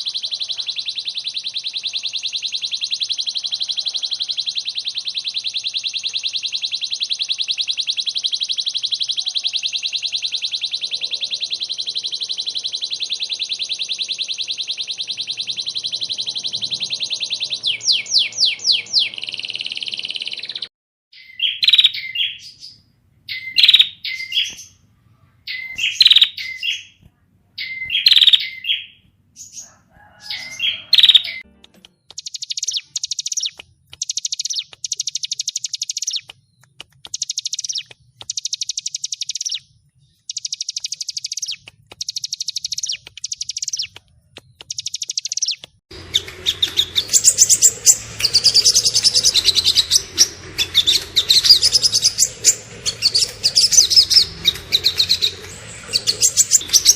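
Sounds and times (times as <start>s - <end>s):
chatter of bird calls: 0.0s - 20.7s, 42.6s - 56.9s
songbird phrases: 0.0s - 56.9s
fast rattling bird trills: 25.5s - 26.9s, 27.6s - 31.4s, 32.0s - 56.9s.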